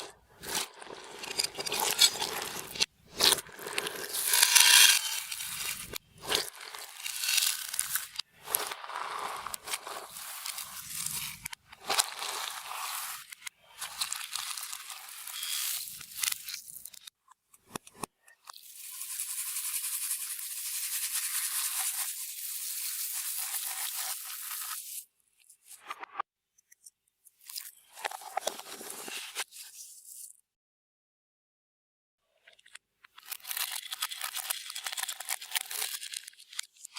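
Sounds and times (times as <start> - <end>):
slime squishing and popping: 0.4 - 13.0.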